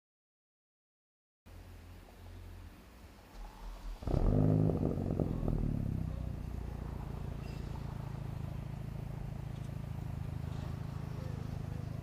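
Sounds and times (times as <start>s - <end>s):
car engine revving then idling: 3.6s - 12.0s.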